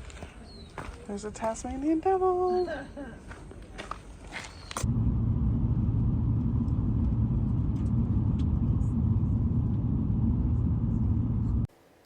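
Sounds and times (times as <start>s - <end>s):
car road and engine rumble: 4.8s - 11.7s.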